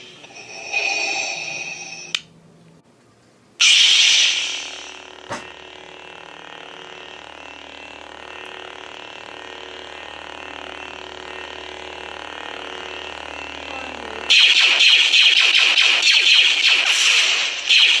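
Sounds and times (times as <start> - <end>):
lightsaber buzzing hum: 0.0 - 2.8, 3.5 - 18.0
harsh effect sound: 3.6 - 5.4.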